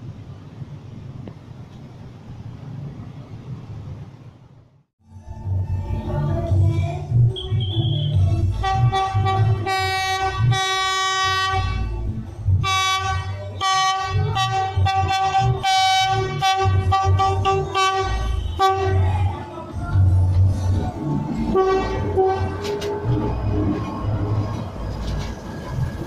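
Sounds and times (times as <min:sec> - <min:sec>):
train rumbling: 0:00.0 - 0:26.0
locomotive air horn: 0:07.6 - 0:11.9, 0:12.6 - 0:19.2, 0:21.5 - 0:22.9.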